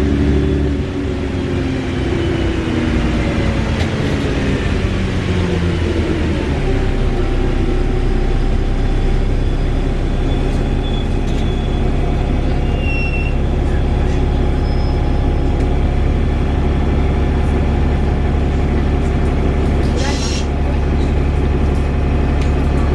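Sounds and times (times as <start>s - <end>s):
bus engine droning: 0.0s - 22.9s
brief high squeaks: 12.6s - 13.4s, 14.6s - 15.3s.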